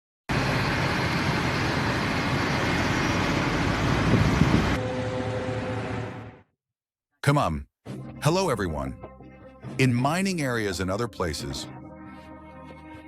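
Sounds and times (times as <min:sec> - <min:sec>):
heavy machinery engine rumbling: 0:00.3 - 0:06.5.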